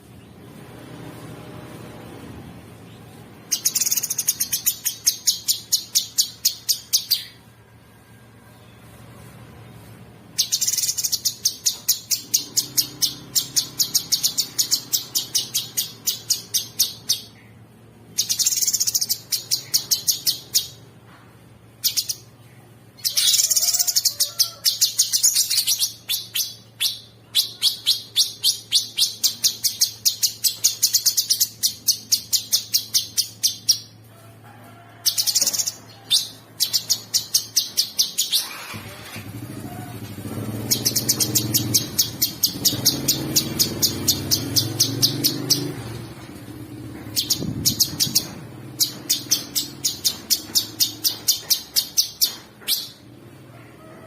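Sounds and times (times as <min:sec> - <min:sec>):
bird harsh chattering song: 0:03.5 - 0:07.4, 0:10.4 - 0:20.8, 0:21.8 - 0:34.0, 0:35.1 - 0:38.8, 0:40.6 - 0:46.0, 0:47.0 - 0:53.0.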